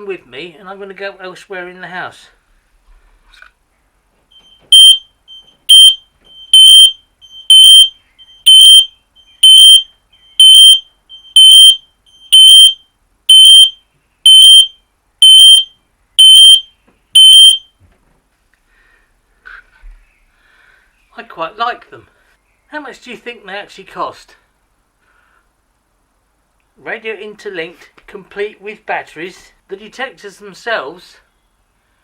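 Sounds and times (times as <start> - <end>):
smoke alarm beeping: 4.3 - 17.7.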